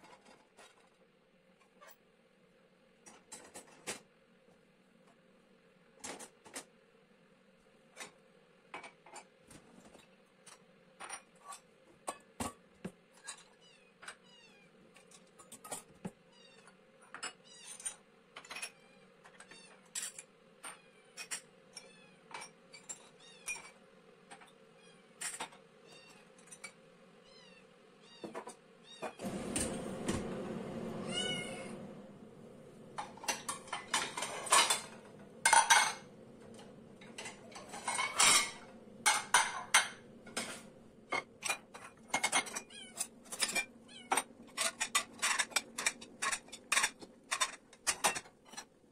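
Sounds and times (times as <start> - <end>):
cat meowing: 31.0 - 31.9
dishes clinking: 32.6 - 48.7.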